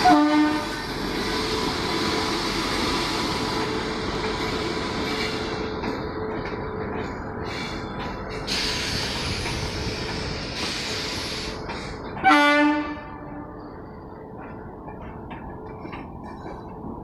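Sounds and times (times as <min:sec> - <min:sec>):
locomotive horn blast: 0:00.0 - 0:00.8, 0:12.2 - 0:13.6
train wheels rumbling: 0:00.0 - 0:17.0.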